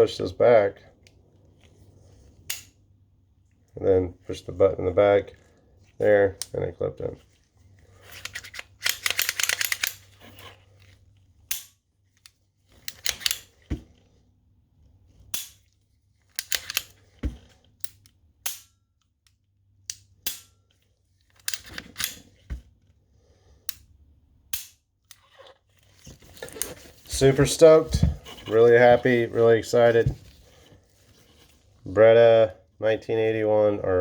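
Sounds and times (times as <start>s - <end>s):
pistol slide clicking and clacking: 2.5s - 2.8s, 8.2s - 10.2s, 11.5s - 13.6s, 15.3s - 15.6s, 16.4s - 17.0s, 17.8s - 20.6s, 21.3s - 22.3s, 24.5s - 25.2s.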